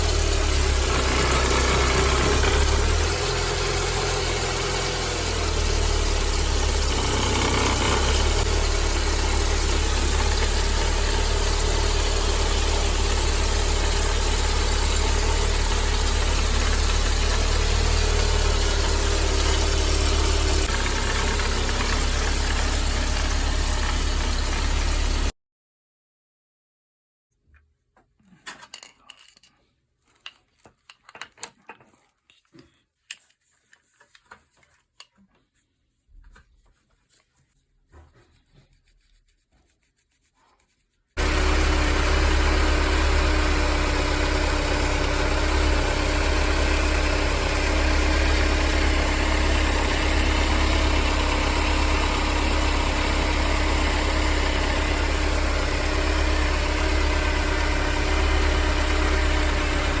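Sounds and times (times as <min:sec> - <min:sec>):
car engine idling: 0:00.0 - 0:25.3, 0:41.2 - 1:00.0.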